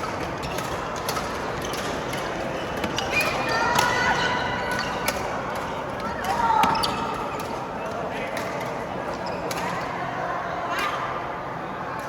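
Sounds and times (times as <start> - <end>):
shoes squeaking on court floor: 6.6 - 7.6.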